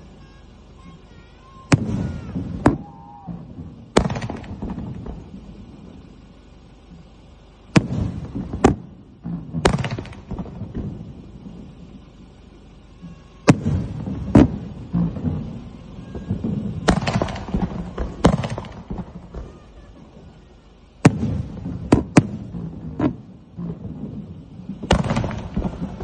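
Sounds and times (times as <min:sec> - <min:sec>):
fireworks bangs with crackle: 0:00.0 - 0:26.0.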